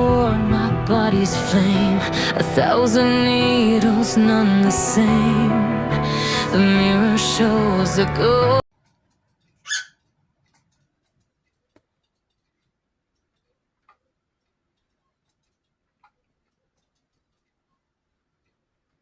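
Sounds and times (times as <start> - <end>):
cockatiel squawk: 9.6 - 10.0.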